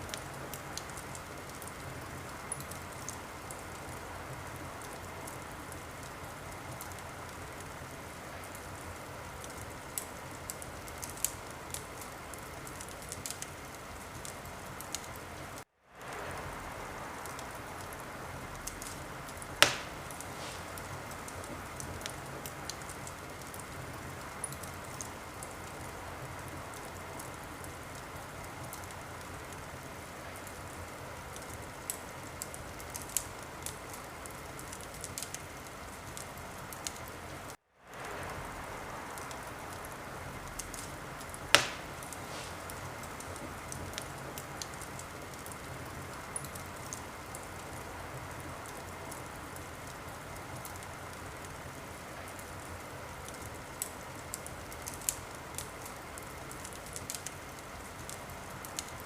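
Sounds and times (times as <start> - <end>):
wood fire crackling: 0.0 - 59.0
sharp pops from fire: 9.4 - 15.2, 17.2 - 26.0, 31.4 - 37.0, 39.1 - 47.6, 53.2 - 59.0.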